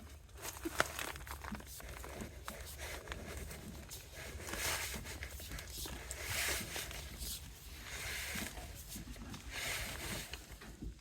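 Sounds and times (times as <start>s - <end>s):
wire scraping through a pipe: 0.0s - 10.8s.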